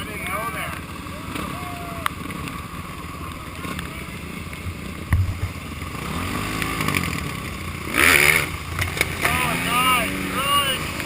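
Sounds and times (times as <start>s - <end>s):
dirt bike engine revving: 2.2s - 11.0s
wind and rain noise: 4.6s - 6.1s.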